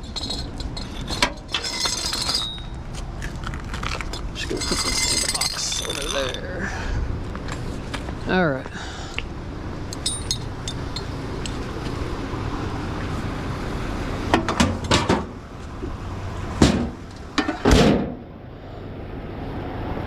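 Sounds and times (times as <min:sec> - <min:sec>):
metal clatter: 0:00.0 - 0:02.8, 0:03.8 - 0:06.5, 0:09.9 - 0:11.1, 0:16.6 - 0:18.2
metal gear clinking and knocking: 0:00.0 - 0:02.8, 0:04.5 - 0:06.4, 0:10.0 - 0:11.1
sharp metal bang: 0:16.6 - 0:18.2.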